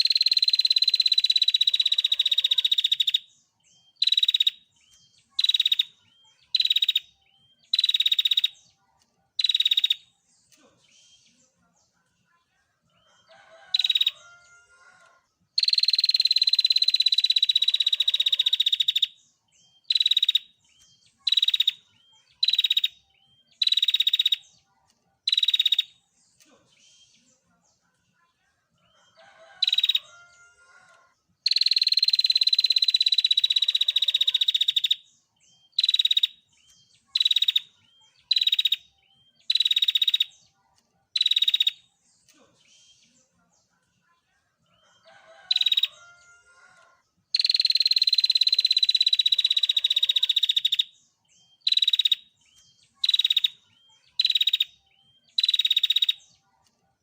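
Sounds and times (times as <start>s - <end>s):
bird trilling call: 35.8s - 36.4s.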